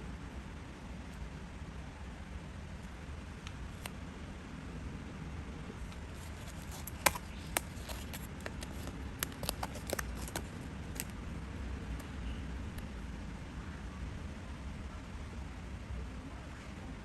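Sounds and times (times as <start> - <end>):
low background hum: 0.0 - 17.0
paper pieces clicking and tapping: 6.2 - 11.1.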